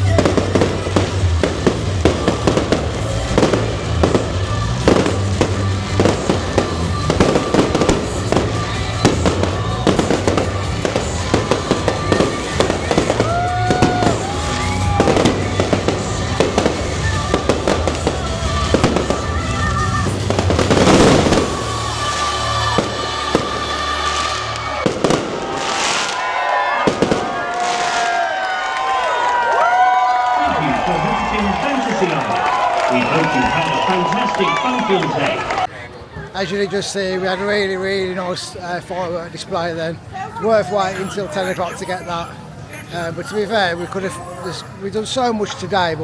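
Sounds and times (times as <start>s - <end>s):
fireworks bangs and crackling: 0.0s - 29.8s.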